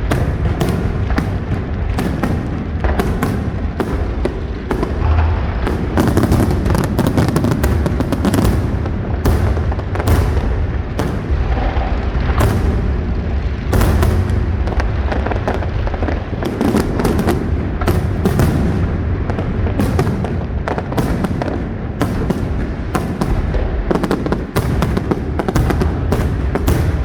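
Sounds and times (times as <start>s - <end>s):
fireworks bangs and crackles: 0.0s - 27.0s
deep rumble: 2.6s - 19.8s.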